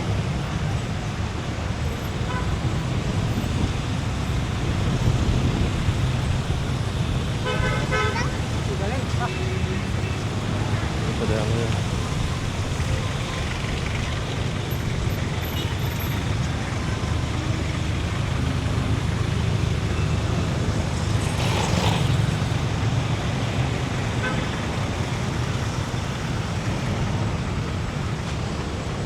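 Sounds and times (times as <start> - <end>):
street traffic rumbling: 0.0 - 29.0
vehicle passing: 17.8 - 26.9.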